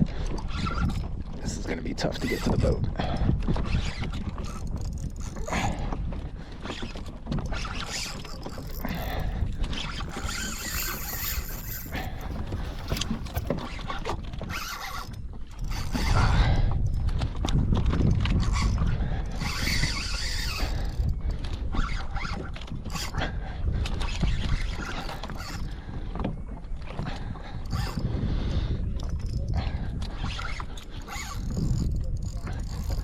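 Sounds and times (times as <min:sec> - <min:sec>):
fishing reel cranking: 0:07.8 - 0:13.7, 0:31.0 - 0:33.0
kayak hull noise: 0:08.4 - 0:13.8.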